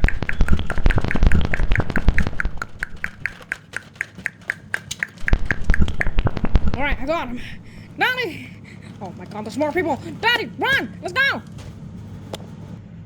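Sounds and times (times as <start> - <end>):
low thumps: 0.0 - 8.0.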